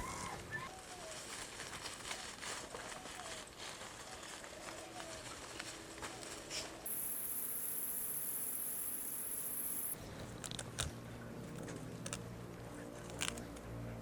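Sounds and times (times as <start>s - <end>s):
high insect buzz: 6.9s - 10.0s
low steady hum: 6.9s - 10.0s
sharp clicks: 6.9s - 10.0s.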